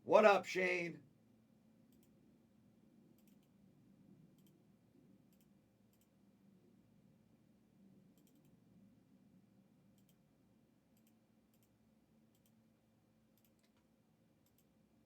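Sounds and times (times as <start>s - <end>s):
faint low hum: 0.0s - 15.0s
faint sharp clicks: 4.4s - 4.6s, 8.2s - 8.6s, 10.0s - 10.2s, 11.0s - 12.6s, 13.4s - 14.7s.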